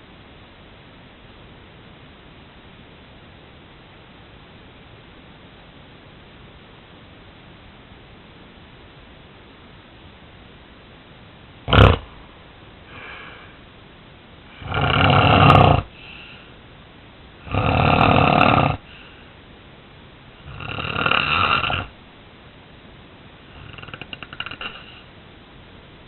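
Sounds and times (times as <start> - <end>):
person snoring loudly: 11.7 - 12.0, 14.5 - 16.0, 17.4 - 18.9, 20.4 - 22.0, 23.5 - 25.0
faint breaths: 12.1 - 13.7, 14.5 - 16.7, 17.4 - 19.5, 23.4 - 25.2.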